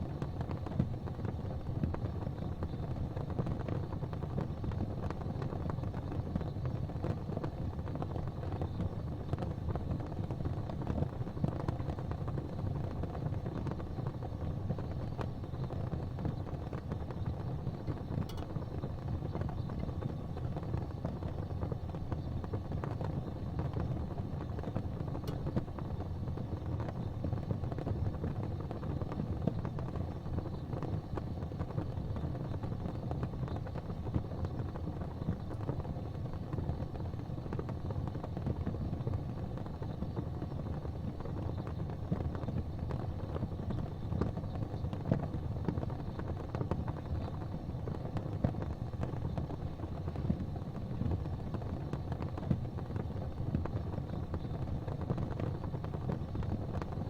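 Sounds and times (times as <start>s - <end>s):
gas fire flames rumbling: 0.0s - 57.0s
faint ticks: 17.8s - 18.6s.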